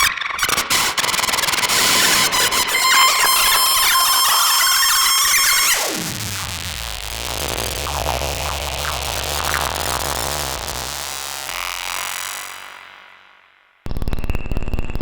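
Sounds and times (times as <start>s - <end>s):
harsh synthesizer tone: 0.0s - 12.1s.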